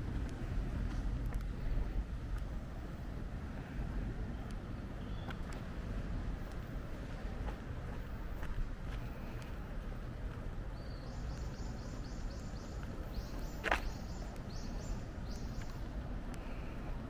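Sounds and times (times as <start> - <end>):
distant traffic rumble: 0.0 - 17.0
small bird chirping: 5.0 - 5.4, 10.8 - 15.8.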